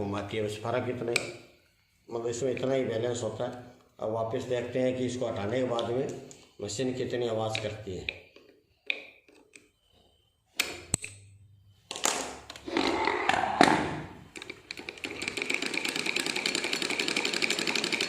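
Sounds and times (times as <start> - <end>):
sewing machine clattering: 14.3 - 18.0.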